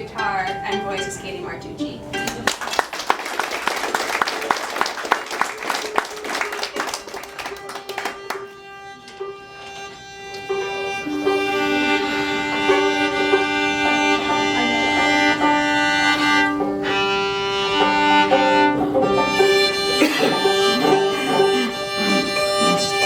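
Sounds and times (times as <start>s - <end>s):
applause: 2.4s - 8.6s
fiddle playing over drone: 6.4s - 23.0s.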